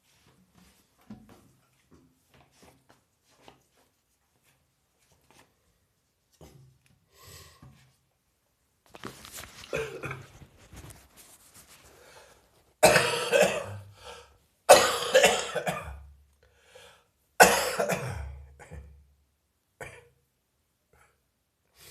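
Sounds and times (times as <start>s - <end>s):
person coughing: 9.7s - 10.3s, 12.8s - 13.9s, 14.7s - 16.0s, 17.4s - 19.0s, 19.8s - 20.2s.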